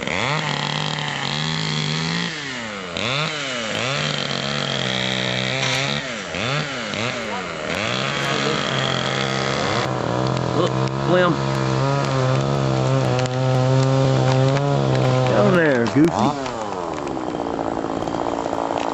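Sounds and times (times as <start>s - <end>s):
chainsaw cutting: 0.0s - 18.9s.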